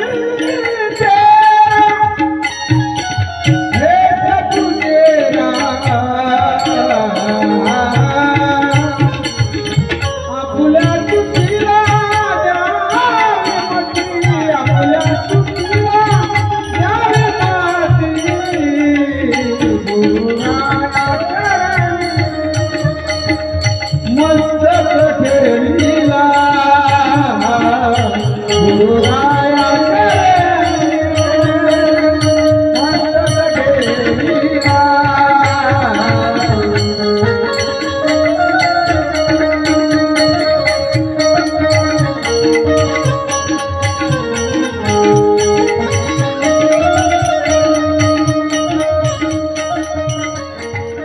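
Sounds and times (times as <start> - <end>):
hand drums beating: 0.0 - 51.0.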